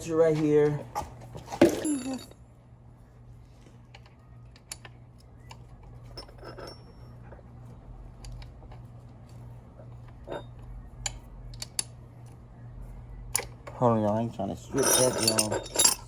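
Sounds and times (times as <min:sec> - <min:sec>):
steady low hum: 0:00.0 - 0:16.0
metal hand tools clinking: 0:01.7 - 0:02.4, 0:06.2 - 0:07.0, 0:14.7 - 0:16.0.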